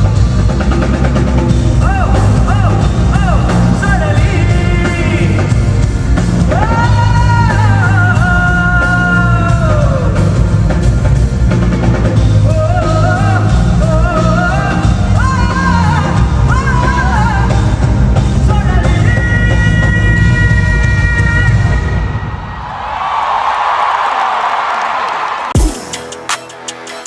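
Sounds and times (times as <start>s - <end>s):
live band music: 0.0s - 22.0s, 25.6s - 27.0s
person singing: 1.8s - 10.9s, 12.4s - 22.0s.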